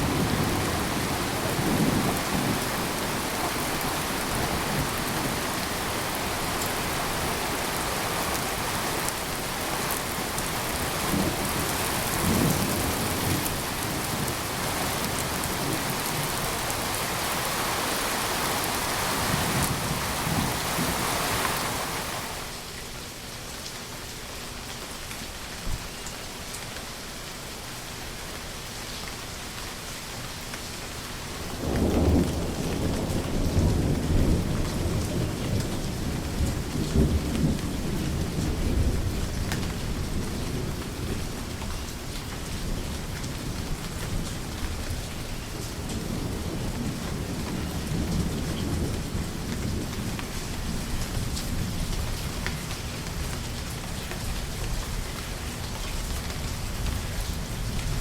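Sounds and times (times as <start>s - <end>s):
thunder rumbling: 0.0s - 8.3s, 31.5s - 41.6s
steady rain: 0.0s - 58.0s.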